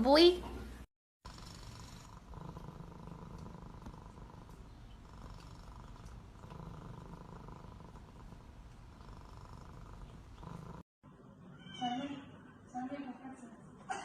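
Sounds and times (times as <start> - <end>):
cat purring: 1.2 - 10.9.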